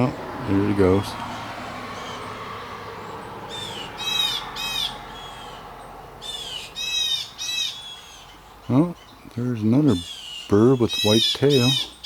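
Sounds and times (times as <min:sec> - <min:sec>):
blue jays calling: 0:00.0 - 0:12.0.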